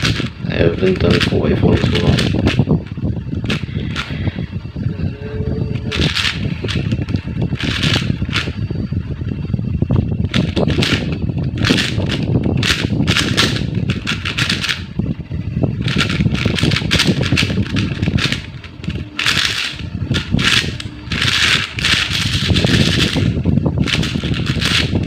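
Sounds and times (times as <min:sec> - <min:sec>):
puzzle cube clacking clicks: 0:01.0 - 0:02.6, 0:05.9 - 0:06.8, 0:10.4 - 0:14.8, 0:15.9 - 0:23.3, 0:23.9 - 0:24.9.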